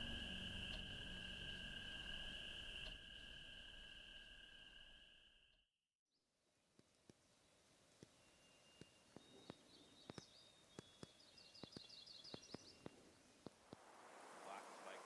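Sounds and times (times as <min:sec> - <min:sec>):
bird trill: 0:00.0 - 0:04.7, 0:08.1 - 0:13.0
whistled birdsong: 0:00.0 - 0:05.4, 0:07.6 - 0:13.4.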